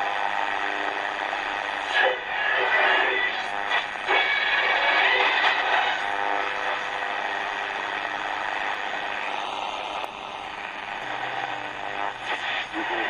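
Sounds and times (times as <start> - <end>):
faint radio station: 0.0 - 13.0
shortwave radio static: 0.0 - 13.0.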